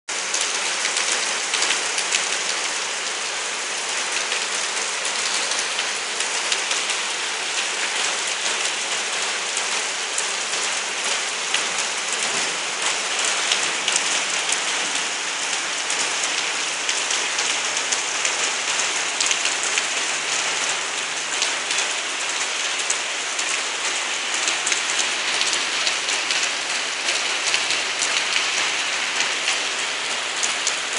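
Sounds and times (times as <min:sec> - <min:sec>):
steady rain falling: 0:00.1 - 0:30.9.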